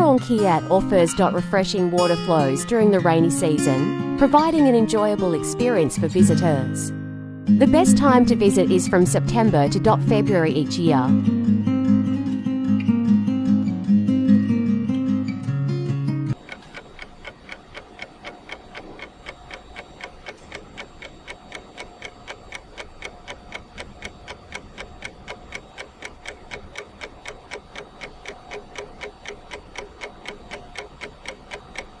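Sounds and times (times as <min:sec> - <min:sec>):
steady even ticking: 0:00.0 - 0:05.8, 0:07.7 - 0:11.0, 0:16.3 - 0:32.0.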